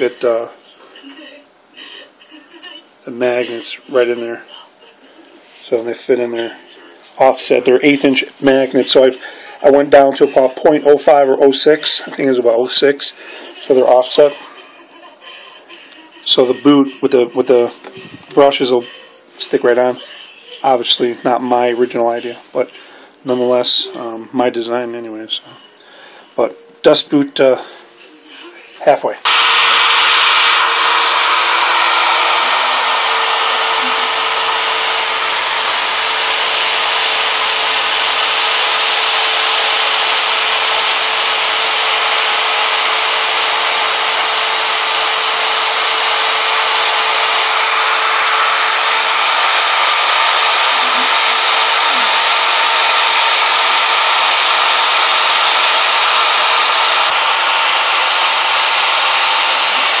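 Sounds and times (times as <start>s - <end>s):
router spindle hiss and whine: 29.2s - 60.0s.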